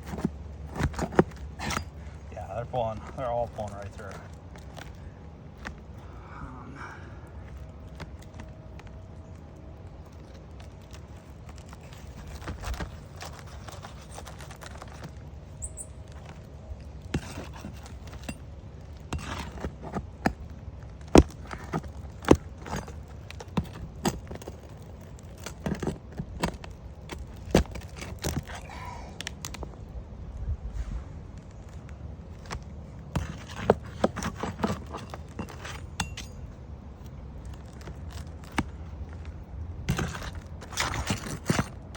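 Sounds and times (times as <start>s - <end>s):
tool scraping roof shingles: 0.0s - 6.0s, 10.1s - 28.7s, 31.4s - 41.9s
steady low rumble: 0.0s - 13.6s, 26.2s - 33.2s.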